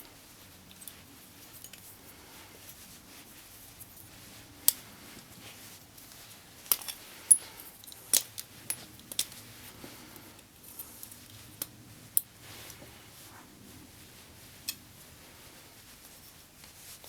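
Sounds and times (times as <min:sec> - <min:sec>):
metal parts and tools clinking: 0:06.7 - 0:09.4.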